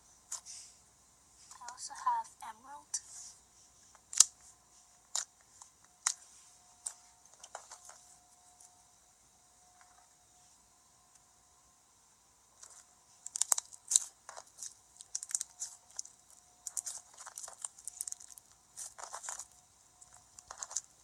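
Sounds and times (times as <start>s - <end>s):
slime crackling and popping: 4.1s - 4.3s, 12.6s - 21.0s.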